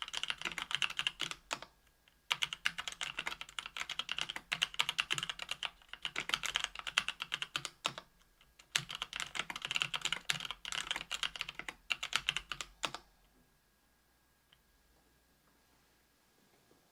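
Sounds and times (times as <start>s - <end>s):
keyboard typing: 0.0s - 13.1s.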